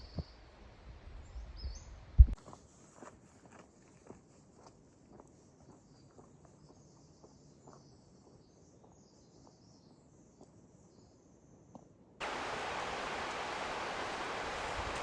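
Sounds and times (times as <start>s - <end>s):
high insect hum: 12.2s - 15.0s
loud steady rushing noise: 12.2s - 15.0s.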